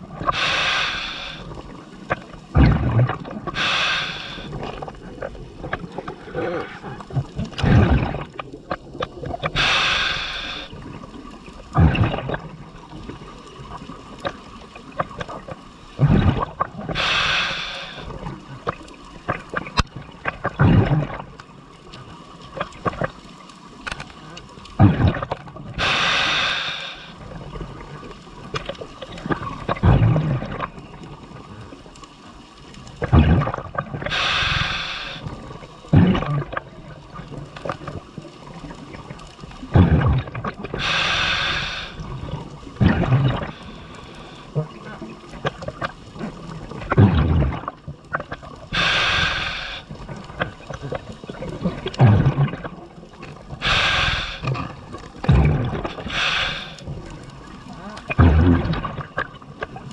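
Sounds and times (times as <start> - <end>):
exhaled bubbles gurgling: 0.0 - 59.9
regulator hissing inhalation: 0.3 - 1.6, 3.6 - 4.6, 9.6 - 10.7, 16.9 - 18.1, 25.8 - 27.2, 34.1 - 35.3, 40.8 - 42.1, 48.7 - 50.0, 53.6 - 54.5, 56.0 - 56.8.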